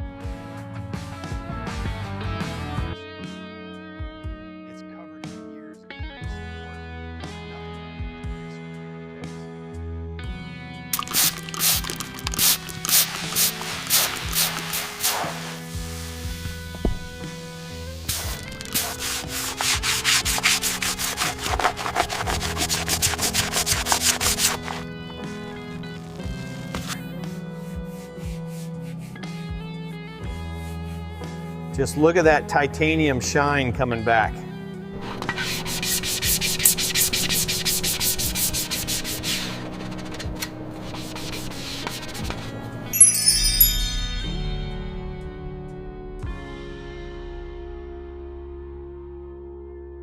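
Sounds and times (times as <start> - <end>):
background music: 0.0 - 50.0
rapid scrubbing strokes: 11.0 - 24.9, 35.0 - 42.5.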